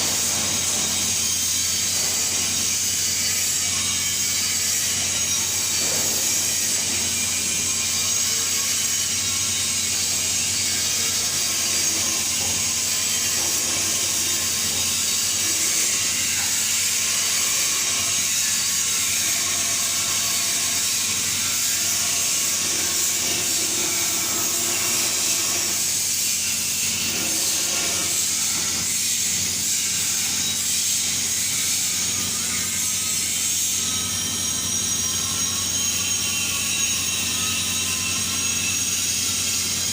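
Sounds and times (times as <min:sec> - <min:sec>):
welding arc hissing: 0:09.8 - 0:35.4.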